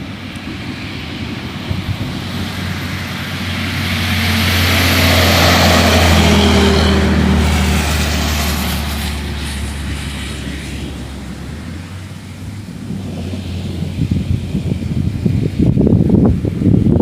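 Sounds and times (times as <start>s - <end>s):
rolling thunder: 0.0s - 17.0s.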